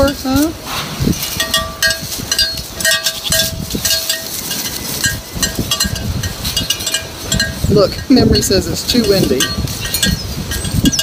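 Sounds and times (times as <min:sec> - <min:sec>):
wind rumbling on microphone: 0:00.0 - 0:11.0
small metal bells ringing: 0:01.3 - 0:11.0.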